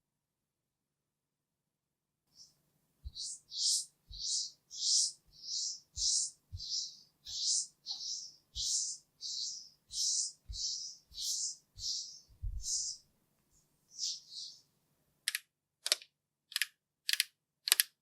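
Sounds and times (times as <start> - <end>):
soft low thud of brush: 9.9 - 13.0.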